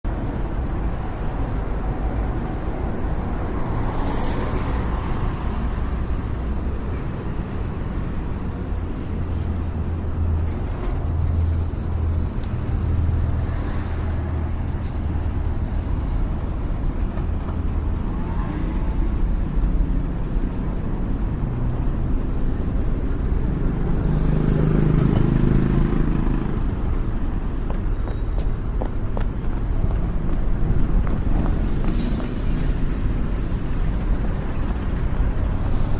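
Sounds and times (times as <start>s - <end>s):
traffic rumble: 0.0s - 35.9s
cars passing: 0.1s - 35.9s
loud vehicle passing: 17.7s - 27.5s.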